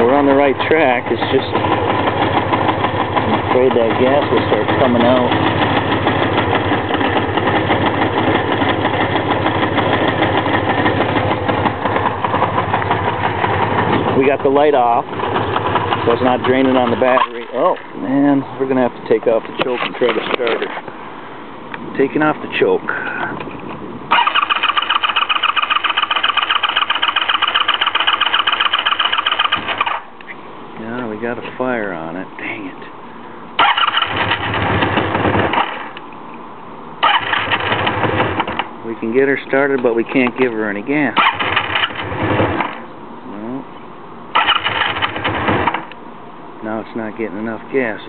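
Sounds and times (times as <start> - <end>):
motorcycle engine idling: 0.0 - 20.8, 24.1 - 30.1, 33.6 - 36.0, 37.0 - 38.7.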